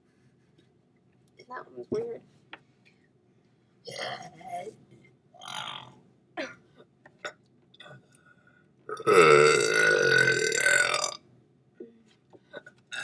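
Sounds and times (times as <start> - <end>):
person burping: 3.9 - 4.3, 8.9 - 11.2, 12.6 - 13.0.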